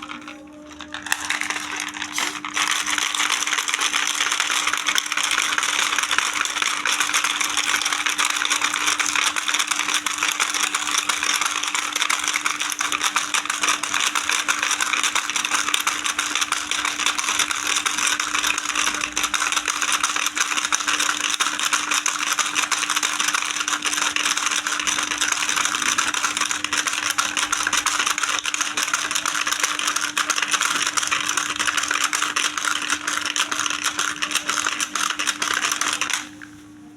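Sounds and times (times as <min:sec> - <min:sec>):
plastic pieces clattering: 0:00.0 - 0:05.0
toy motor hum: 0:00.7 - 0:36.3.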